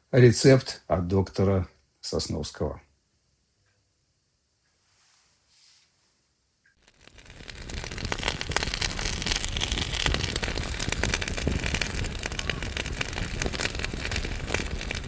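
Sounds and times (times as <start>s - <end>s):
wood fire crackling: 6.8s - 15.0s.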